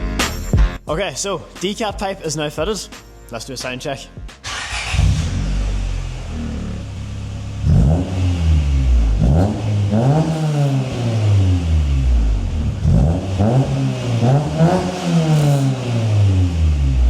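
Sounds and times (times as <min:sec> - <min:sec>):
car engine idling and revving: 0:04.4 - 0:17.0.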